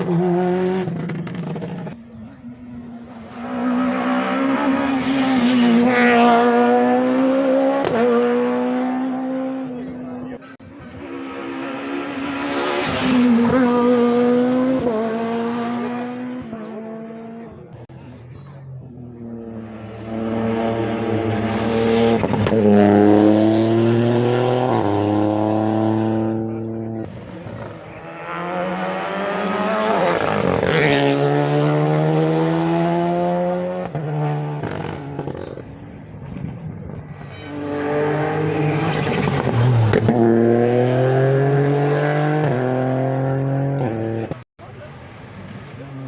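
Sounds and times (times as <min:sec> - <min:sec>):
rally car engine accelerating: 0:00.0 - 0:46.0.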